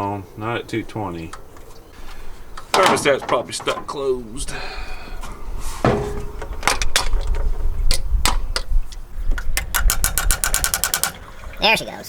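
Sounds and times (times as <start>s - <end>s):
engine knocking: 9.8s - 11.2s.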